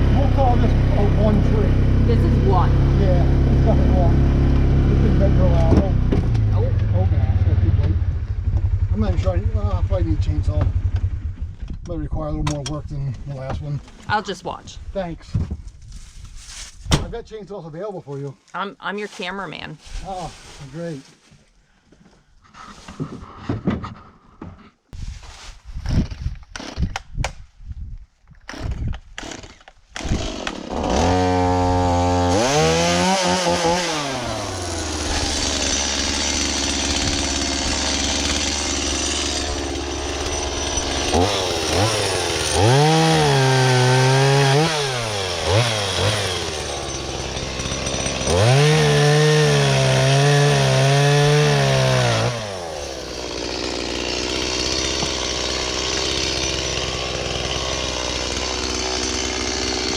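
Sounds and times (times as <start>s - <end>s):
chainsaw starting and revving: 0.0s - 8.0s, 26.5s - 26.9s, 28.5s - 59.9s.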